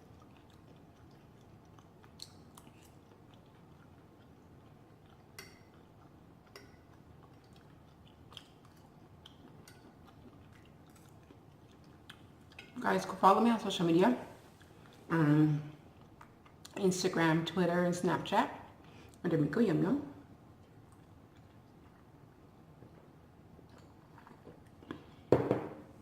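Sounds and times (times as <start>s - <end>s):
person chewing food: 0.0s - 12.8s, 14.4s - 15.1s, 15.8s - 16.8s, 20.5s - 25.3s.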